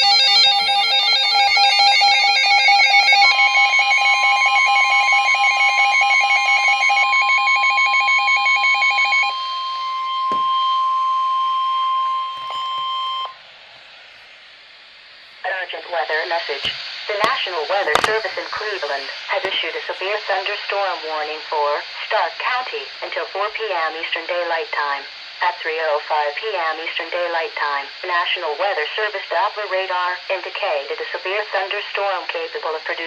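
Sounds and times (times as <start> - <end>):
steady warning alarm tone: 0.0 - 13.4.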